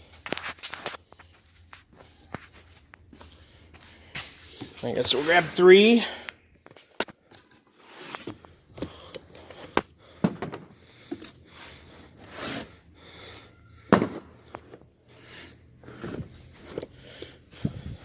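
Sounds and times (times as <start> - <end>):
cardboard rustling and scraping: 7.6 - 8.6, 15.7 - 17.3.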